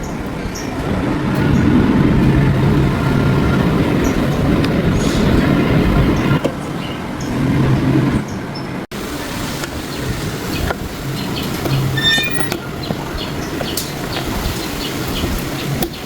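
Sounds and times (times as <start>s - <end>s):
washer drum spinning with rumbling grind: 0.8s - 8.3s.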